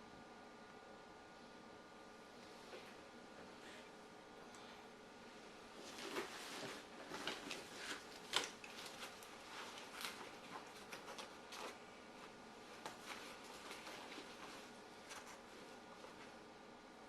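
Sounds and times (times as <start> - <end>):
rummaging through a bag: 5.8 - 16.3.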